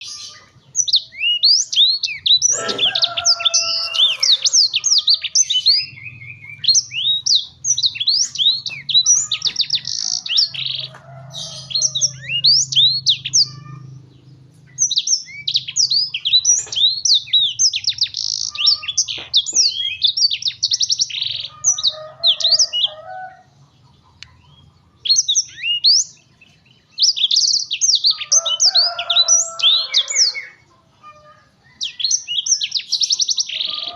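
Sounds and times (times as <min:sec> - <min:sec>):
canary singing: 0:00.0 - 0:33.9.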